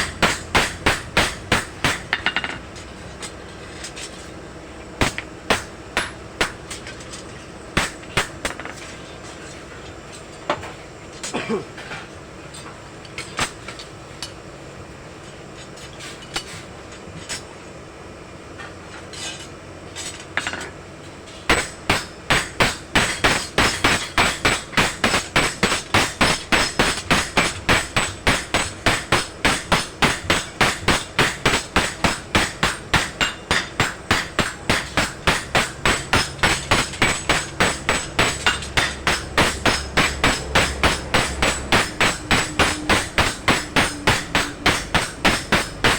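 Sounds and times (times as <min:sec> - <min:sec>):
hammer striking metal on anvil: 0:00.0 - 0:02.6, 0:05.0 - 0:06.8, 0:07.8 - 0:08.7, 0:21.5 - 0:45.9.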